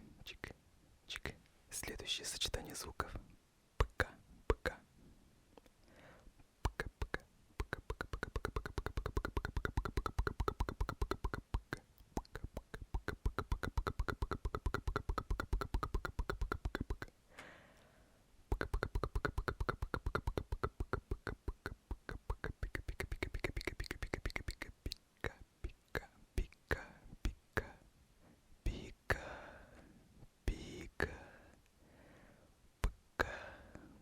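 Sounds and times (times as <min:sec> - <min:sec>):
mouth popping sounds: 0:03.8 - 0:04.8, 0:06.6 - 0:17.1, 0:18.5 - 0:27.8
person breathing: 0:05.8 - 0:06.4, 0:17.3 - 0:18.3, 0:29.1 - 0:32.6, 0:33.2 - 0:34.0.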